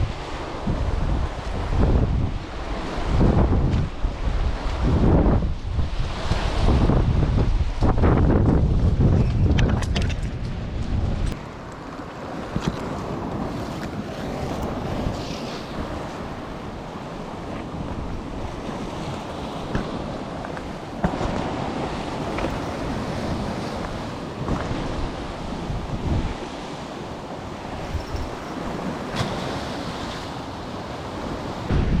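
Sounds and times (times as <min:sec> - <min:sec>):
wind buffeting microphone: 0:00.0 - 0:11.4, 0:12.2 - 0:32.0
sea waves washing: 0:00.0 - 0:32.0.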